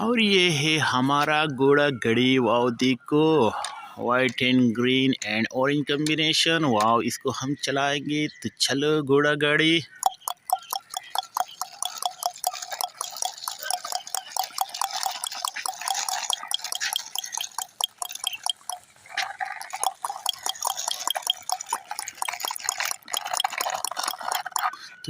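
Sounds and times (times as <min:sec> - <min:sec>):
toy cart wheels clicking and rattling: 0:09.8 - 0:25.0.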